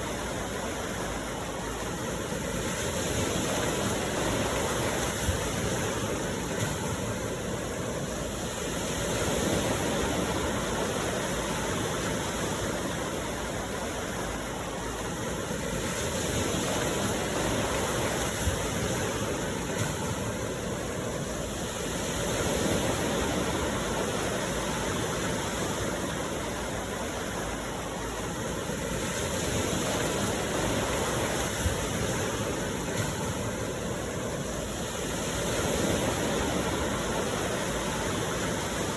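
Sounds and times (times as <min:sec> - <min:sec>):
steady rain hiss: 0:00.0 - 0:38.9.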